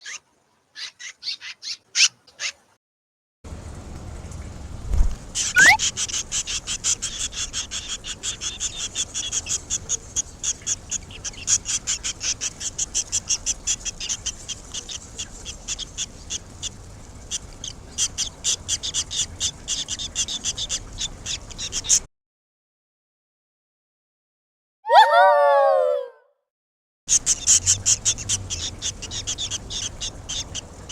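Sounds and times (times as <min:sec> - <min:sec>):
swallow nestlings chirping: 0:05.4 - 0:22.0, 0:27.1 - 0:30.9.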